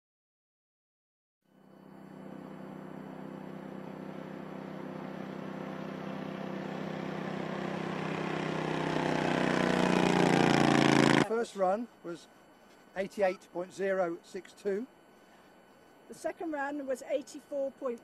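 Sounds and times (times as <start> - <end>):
racing engine running flat out: 3.3 - 11.3.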